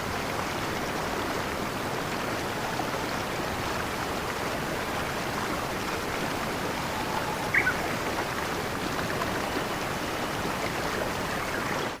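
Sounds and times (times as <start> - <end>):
stream flowing: 0.0 - 12.0
bird chirp: 6.9 - 8.1, 9.2 - 12.0.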